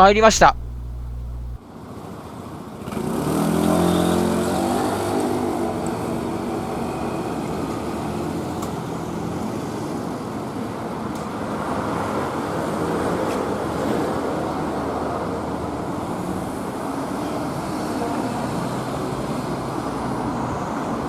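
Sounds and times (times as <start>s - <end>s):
street traffic noise: 0.0s - 21.0s
vehicle engine running: 0.5s - 1.6s.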